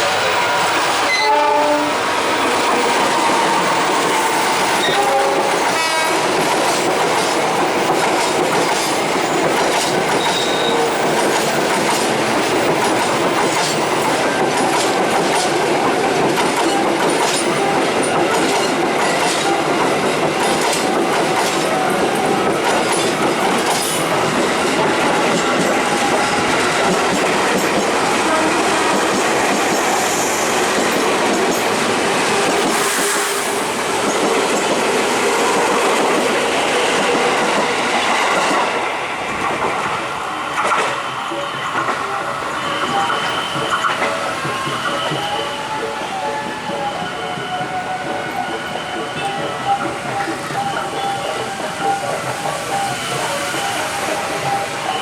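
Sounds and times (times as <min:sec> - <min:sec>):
train passing: 0:00.0 - 0:55.0
train horn: 0:00.3 - 0:06.5, 0:10.2 - 0:11.3, 0:27.9 - 0:30.5, 0:41.3 - 0:55.0.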